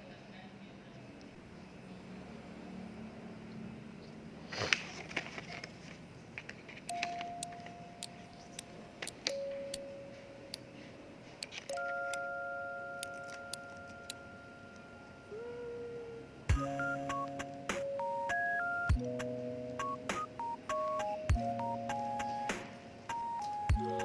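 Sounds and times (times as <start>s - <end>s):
bell-like background music: 7.0s - 10.5s, 16.3s - 20.0s.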